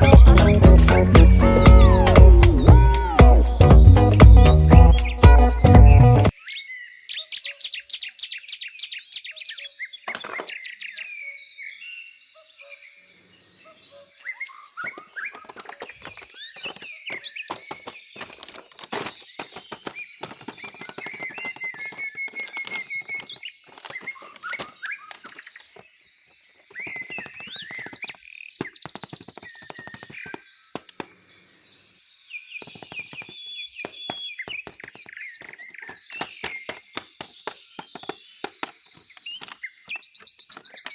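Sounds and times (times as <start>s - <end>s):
sharp clicks and taps: 0.0s - 6.3s, 15.5s - 25.7s, 26.9s - 31.1s, 32.6s - 40.0s
birds chirping and trilling: 0.0s - 40.9s.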